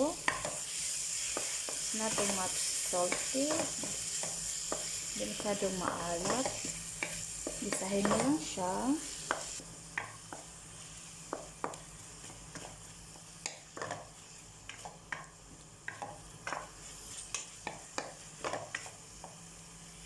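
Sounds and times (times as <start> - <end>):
food sizzling in a pan: 0.0 - 20.0
spatula scraping and knocking pan: 0.2 - 8.6, 13.4 - 19.4.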